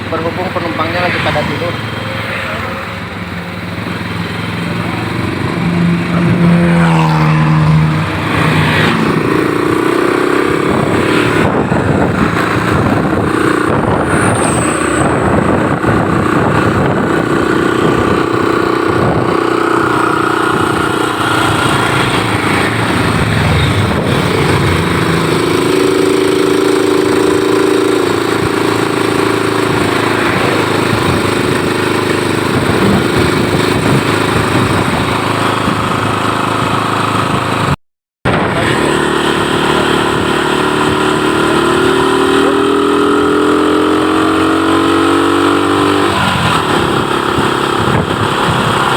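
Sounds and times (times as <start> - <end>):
bus diesel engine running: 0.0 - 41.9
road and traffic noise: 0.0 - 48.9.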